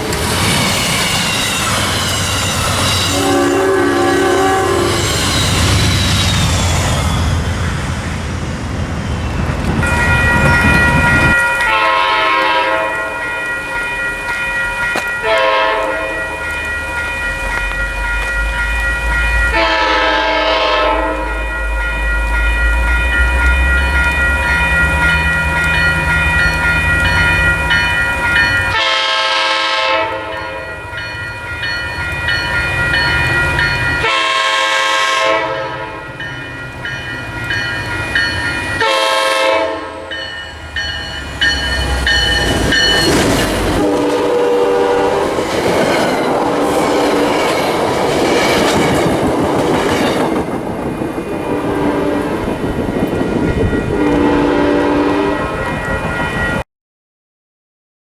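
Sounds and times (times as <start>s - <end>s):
train rumbling past: 0.0s - 56.6s
train horn blasts: 3.0s - 5.4s, 11.3s - 13.4s, 15.2s - 16.4s, 19.5s - 21.5s, 28.7s - 30.8s, 34.0s - 36.1s, 38.8s - 40.3s, 42.0s - 45.4s, 51.4s - 52.5s, 53.6s - 55.6s
high ringing tone: 9.2s - 29.0s, 40.0s - 43.7s.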